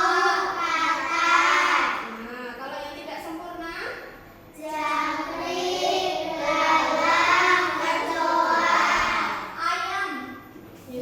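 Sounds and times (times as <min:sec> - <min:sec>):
children singing in unison: 0:05.1 - 0:09.4.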